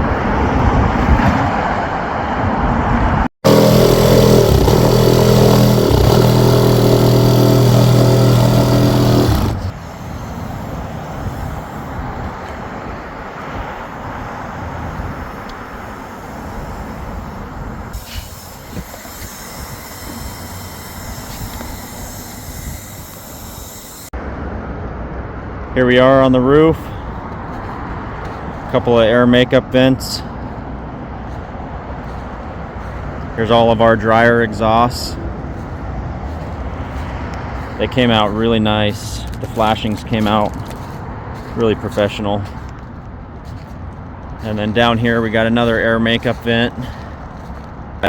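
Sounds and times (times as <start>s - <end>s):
outdoor background noise: 0.0s - 48.0s
outdoor traffic noise: 0.0s - 48.0s
loud steady machine hum: 3.4s - 11.9s, 16.1s - 24.1s.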